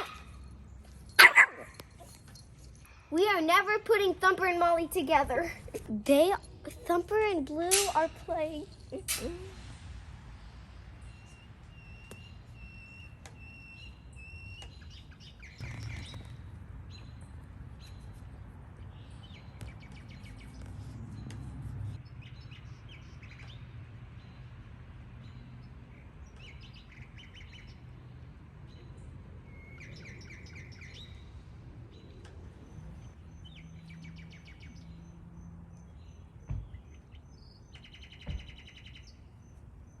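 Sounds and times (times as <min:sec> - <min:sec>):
low rumble: 0:08.2 - 0:12.6
small birds chirping: 0:11.0 - 0:24.6, 0:25.2 - 0:40.0.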